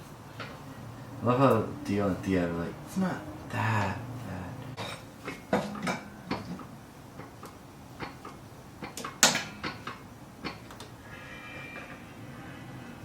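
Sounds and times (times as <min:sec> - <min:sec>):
faint music: 0:00.0 - 0:06.8
sharp clicks and knocks: 0:05.2 - 0:11.0.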